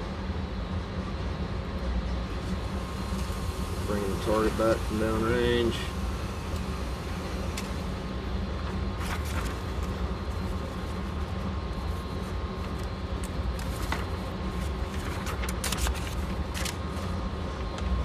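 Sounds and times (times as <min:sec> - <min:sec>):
motorized target carrier hum: 0:00.2 - 0:18.0.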